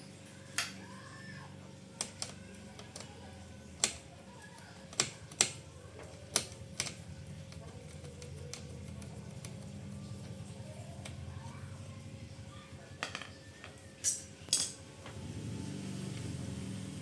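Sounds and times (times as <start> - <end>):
plastic and metal parts clicking: 2.0 - 3.2, 3.8 - 9.6.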